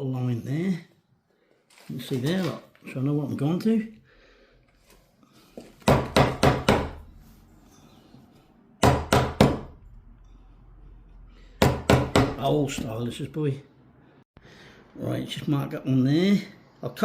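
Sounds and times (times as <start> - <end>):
hammer striking wood chisel: 5.8 - 7.2, 8.8 - 9.9, 11.6 - 12.9.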